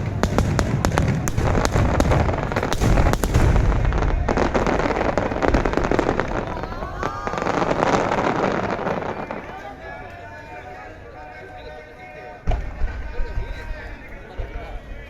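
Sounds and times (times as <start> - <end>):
fireworks booming: 0.0 - 9.9, 12.5 - 13.8
fireworks cracks and crackling: 0.0 - 10.1.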